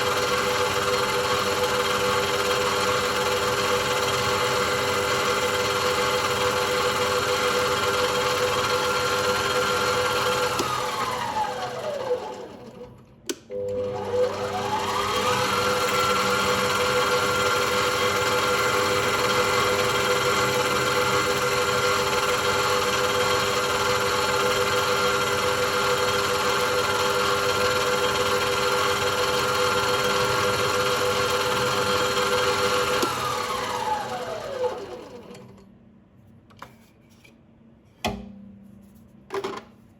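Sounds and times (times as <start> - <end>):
click: 13.2 - 13.6.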